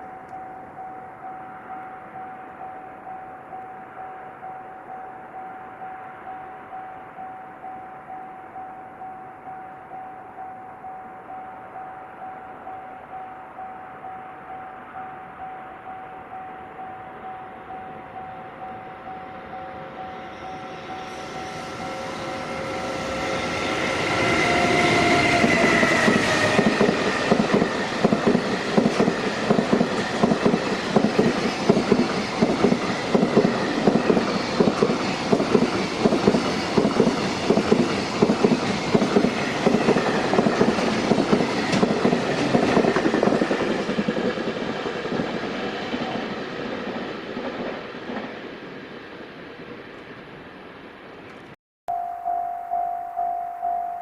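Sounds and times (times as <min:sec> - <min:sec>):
locomotive whine: 0:00.0 - 0:54.0
train wheels clacking on rails: 0:20.1 - 0:48.9.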